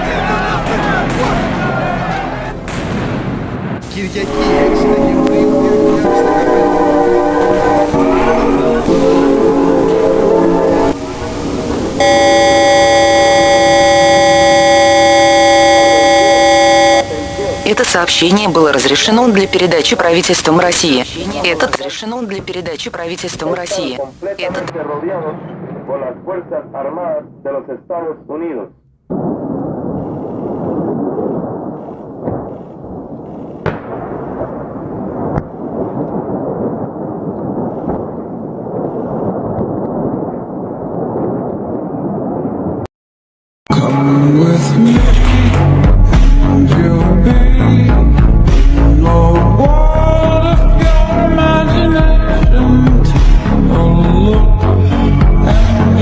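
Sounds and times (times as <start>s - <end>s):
sustained low chord: 4.3s - 17.7s
emergency alert attention tone: 12.0s - 24.7s.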